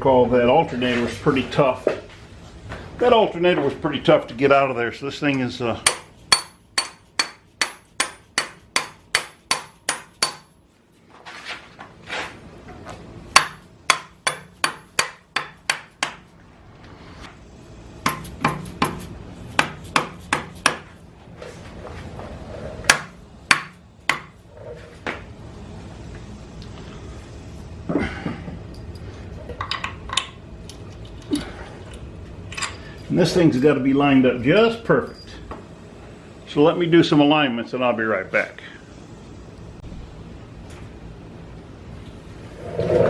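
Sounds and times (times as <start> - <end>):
hammer tapping on metal: 5.8 - 10.5, 13.4 - 16.3, 18.0 - 20.9, 22.9 - 24.4.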